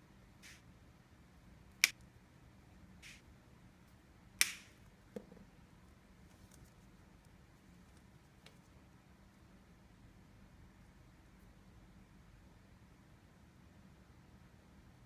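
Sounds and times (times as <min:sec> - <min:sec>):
sharp clicks: 0:04.4 - 0:04.7.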